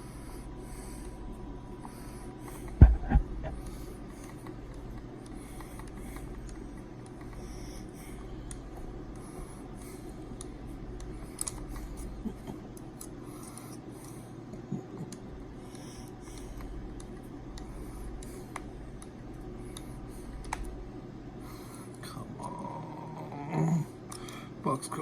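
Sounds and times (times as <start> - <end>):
heavy thumps: 2.8 - 3.6.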